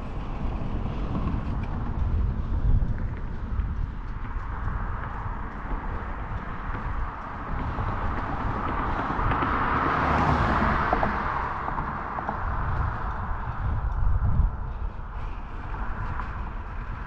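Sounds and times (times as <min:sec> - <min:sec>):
road vehicle passing: 0:00.0 - 0:17.0
wind rumble on microphone: 0:00.0 - 0:17.0.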